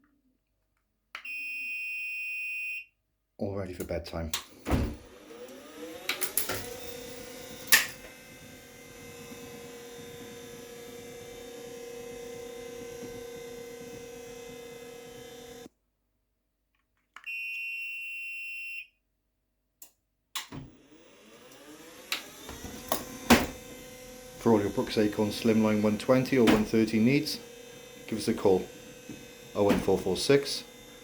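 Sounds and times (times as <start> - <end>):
stairlift motor whining: 4.5 - 15.7, 20.4 - 31.0.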